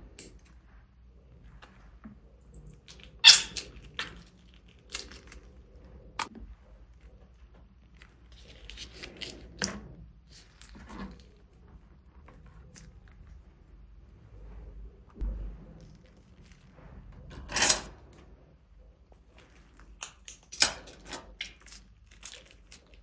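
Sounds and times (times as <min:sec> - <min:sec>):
squishy slime sounds: 0:02.7 - 0:11.6, 0:21.3 - 0:23.0
slime crackling and crunching: 0:21.5 - 0:23.0.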